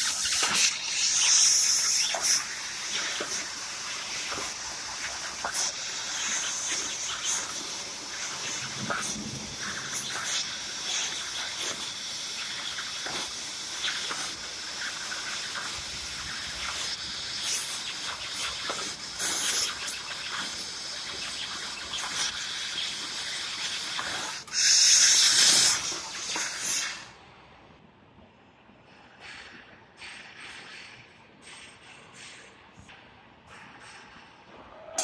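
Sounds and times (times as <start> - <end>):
laser cutter assist gas hiss: 0.0 - 27.2.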